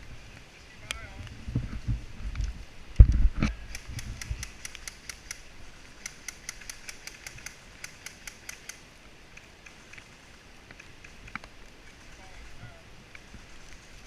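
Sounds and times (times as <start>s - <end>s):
sharp mechanical clicks: 3.1s - 10.0s.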